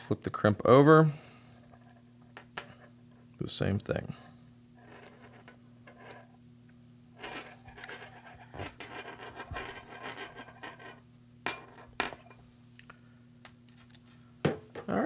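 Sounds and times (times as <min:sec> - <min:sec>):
scratchy rubbing and handling: 0:07.2 - 0:11.0.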